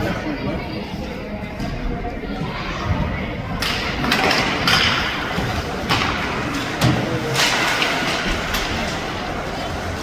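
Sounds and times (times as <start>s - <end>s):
dull thuds of puck and sticks: 3.6s - 8.7s.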